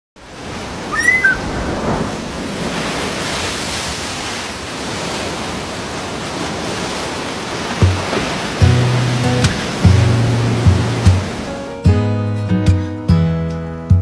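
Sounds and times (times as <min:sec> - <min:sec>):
high bird chirp: 0:01.0 - 0:01.5
steady rushing outdoor noise: 0:07.1 - 0:11.8.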